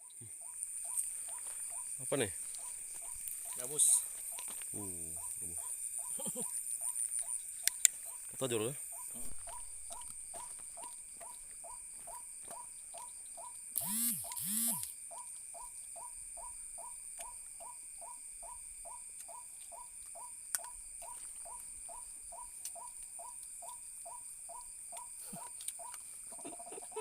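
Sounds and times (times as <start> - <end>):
high insect hum: 0.0 - 27.0
loud drawn-out animal calls: 5.1 - 7.4
sharp click: 13.8 - 14.9.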